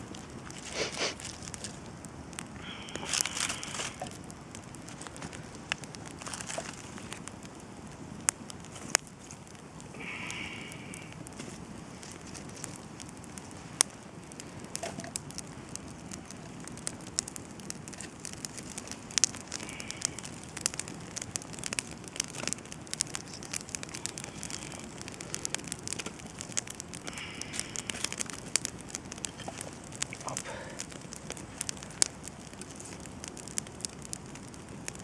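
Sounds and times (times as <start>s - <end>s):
campfire crackling and popping: 0.0s - 35.0s
hiss of damp logs: 0.5s - 1.8s, 2.5s - 4.2s, 9.9s - 12.2s, 18.0s - 22.4s, 27.0s - 28.6s.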